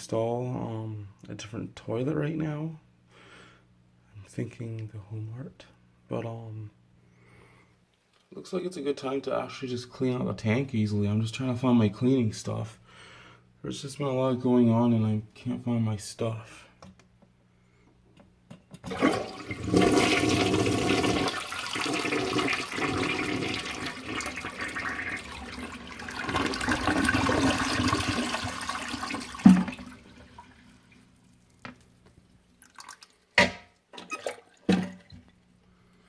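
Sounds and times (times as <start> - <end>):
toilet flushing: 18.8 - 31.4.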